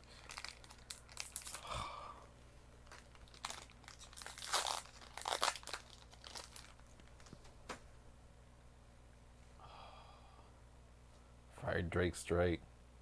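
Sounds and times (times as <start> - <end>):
foil wrapper tearing and crinkling: 0.0 - 1.7, 2.8 - 7.4.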